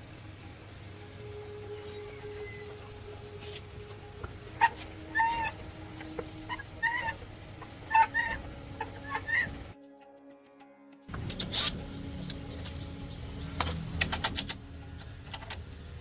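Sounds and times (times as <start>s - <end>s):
faint steady hum: 0.0s - 9.9s
chickens clucking: 4.5s - 9.6s.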